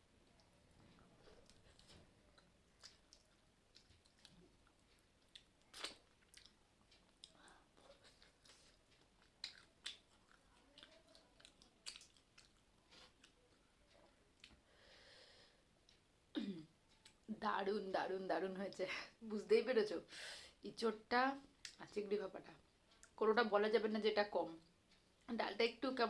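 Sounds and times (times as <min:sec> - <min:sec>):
soft chewing: 0:00.0 - 0:17.4, 0:21.4 - 0:23.3, 0:24.6 - 0:25.9
mouth clicks and smacks: 0:01.4 - 0:13.4.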